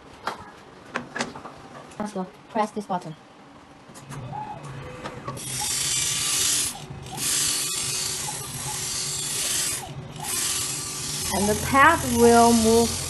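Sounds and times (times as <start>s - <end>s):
grinding machine motor humming: 4.6s - 13.0s.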